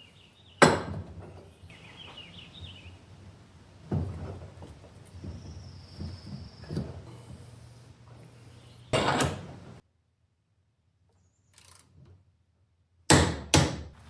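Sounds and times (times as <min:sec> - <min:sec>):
scraping rustle: 0:00.0 - 0:09.8
tools shuffling: 0:00.7 - 0:09.8.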